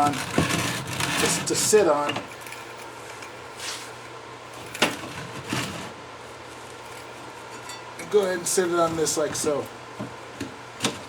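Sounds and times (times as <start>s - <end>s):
low steady hum: 0.0s - 11.0s
soft shuffling: 3.6s - 4.0s.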